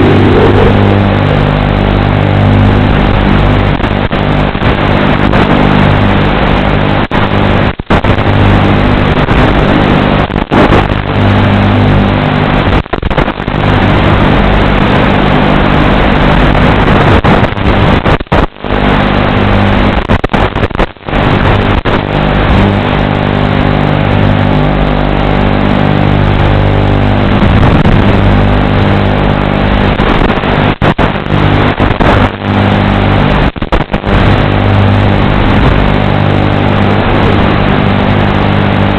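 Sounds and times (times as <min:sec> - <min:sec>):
quadcopter motors buzzing: 0:00.0 - 0:01.2.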